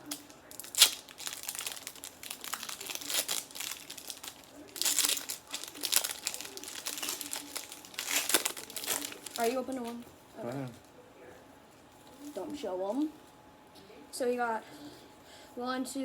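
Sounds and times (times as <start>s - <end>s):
foil pack crinkling: 0.0s - 10.0s
sharp foil rip: 0.6s - 1.1s.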